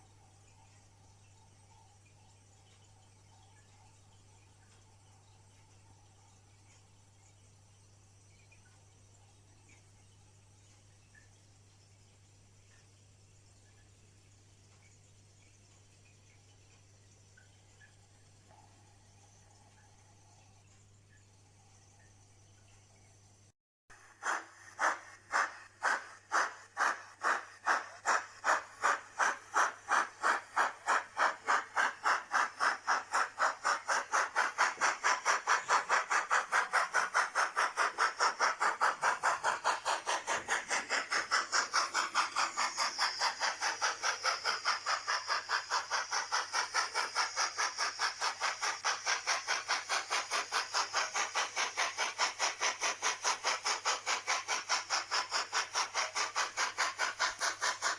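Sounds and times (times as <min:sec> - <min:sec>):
model steam locomotive chuffs: 0:23.9 - 0:57.9.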